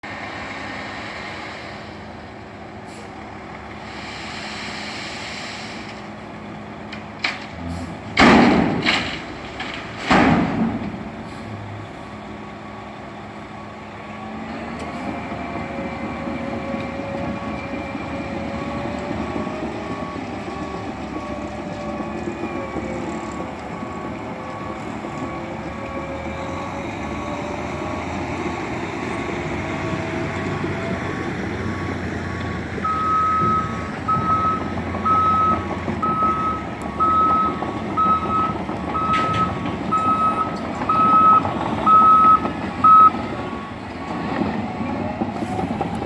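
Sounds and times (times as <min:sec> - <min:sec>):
diesel engine running: 0:00.0 - 0:46.0
loud bangs: 0:08.1 - 0:11.1
backup alarm beeping: 0:32.8 - 0:43.2.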